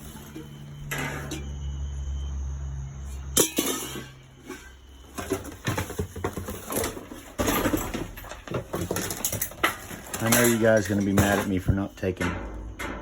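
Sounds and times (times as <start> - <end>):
household items clattering and rustling: 3.4 - 13.0.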